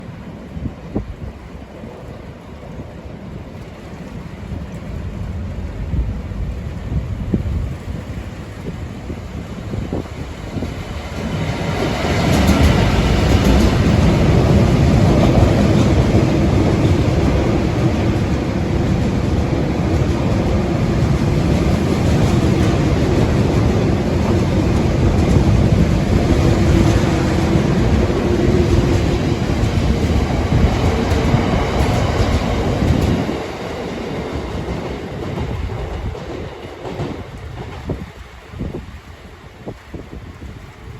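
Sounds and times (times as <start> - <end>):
diesel locomotive passing: 0.0 - 40.9
wheels clicking over rail joints: 9.6 - 39.0.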